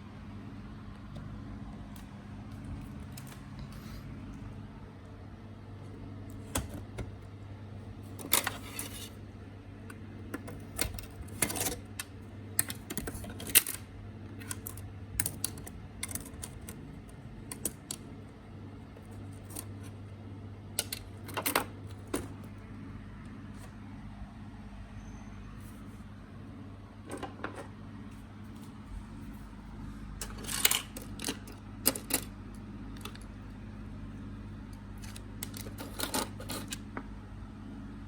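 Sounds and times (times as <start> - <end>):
steady low hum: 0.0 - 38.0
small parts clicking and rattling: 10.3 - 18.2, 20.8 - 22.3, 30.2 - 32.3, 35.0 - 36.8.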